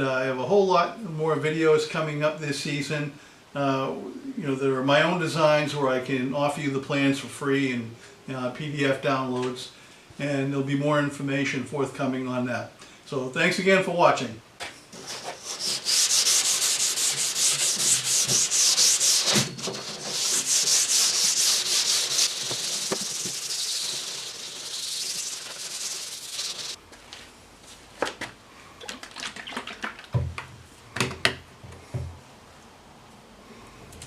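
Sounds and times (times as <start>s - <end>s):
hand sanding strokes: 15.0s - 26.8s.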